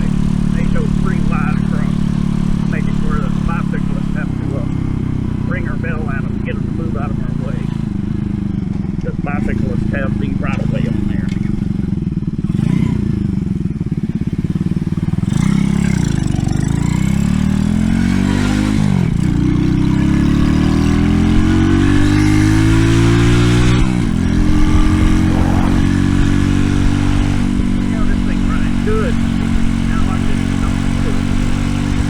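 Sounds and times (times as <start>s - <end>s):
mini bike engine accelerating: 0.0s - 32.0s.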